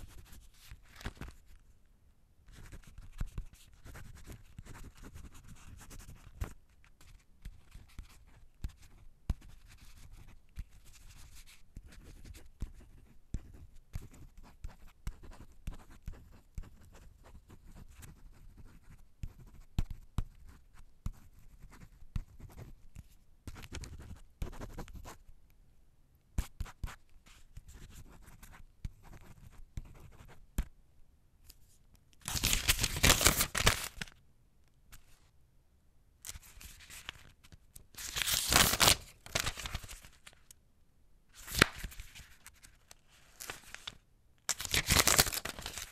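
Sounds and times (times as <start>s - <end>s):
pen scratching on paper: 2.5s - 22.7s, 23.5s - 25.2s.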